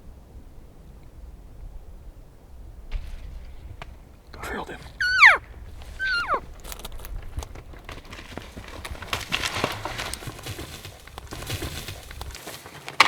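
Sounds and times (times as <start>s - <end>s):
movement through brush: 2.9s - 13.0s
elk cow mews: 4.4s - 6.5s.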